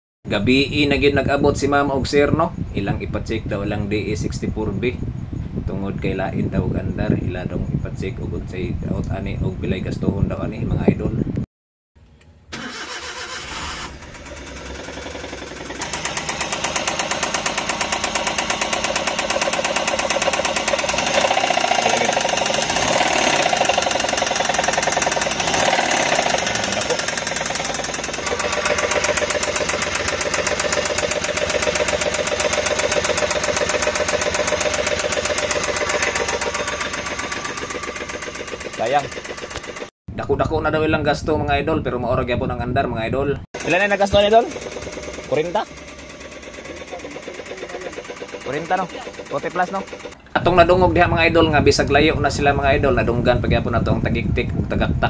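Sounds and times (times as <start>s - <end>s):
engine ticking and knocking: 14.0s - 39.9s, 43.6s - 50.8s.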